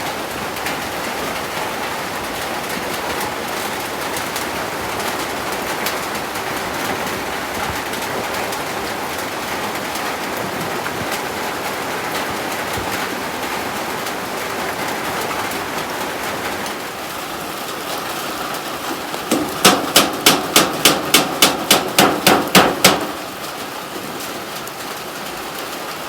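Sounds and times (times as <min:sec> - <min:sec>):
heavy rain: 0:00.0 - 0:26.0
hammer blows: 0:19.3 - 0:23.2.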